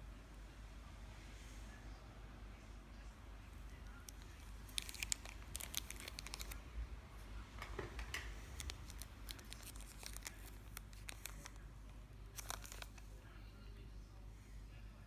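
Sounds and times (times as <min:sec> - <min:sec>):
plastic wrapper crinkling: 0:04.1 - 0:06.6, 0:08.5 - 0:11.6, 0:12.3 - 0:13.1.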